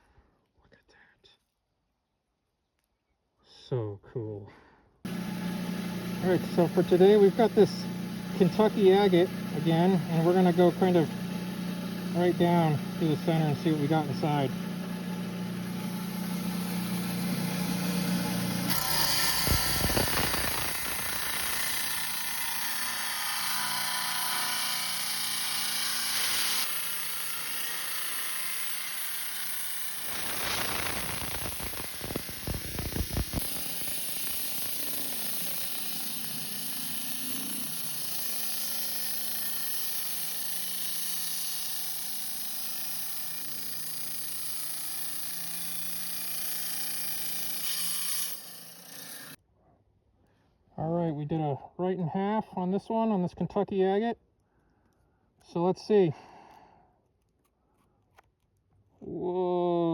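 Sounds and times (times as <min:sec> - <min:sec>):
rock saw cutting stone: 0:05.1 - 0:49.4.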